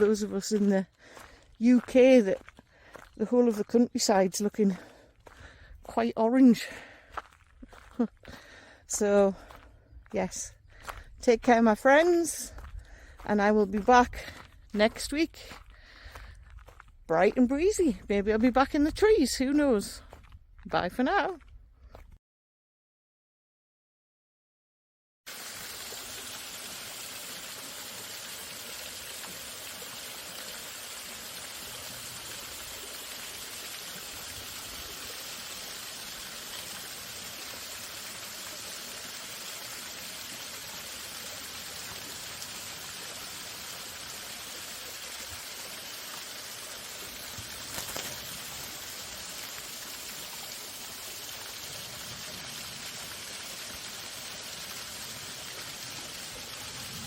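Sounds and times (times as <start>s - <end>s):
waterfall rushing: 40.4s - 56.4s.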